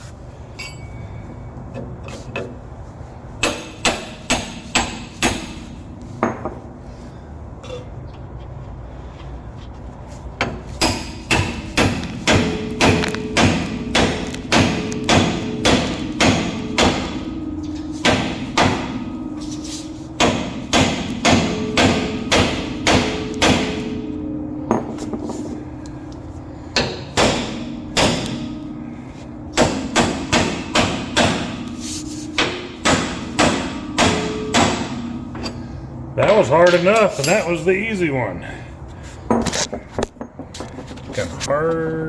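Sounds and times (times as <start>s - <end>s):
heavy hammer blows on metal: 3.4s - 6.6s, 10.4s - 37.9s.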